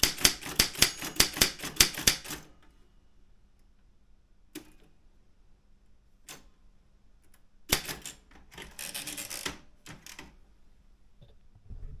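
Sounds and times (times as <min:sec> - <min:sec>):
typewriter clicks and clacks: 0:00.0 - 0:02.4, 0:07.7 - 0:10.2
typewriter rasping run: 0:08.6 - 0:10.2.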